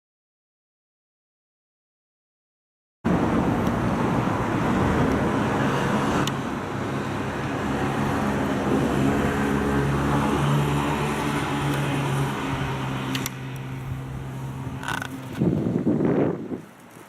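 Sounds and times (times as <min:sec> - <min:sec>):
low engine hum close by: 0:03.1 - 0:16.3
road traffic: 0:03.1 - 0:17.0.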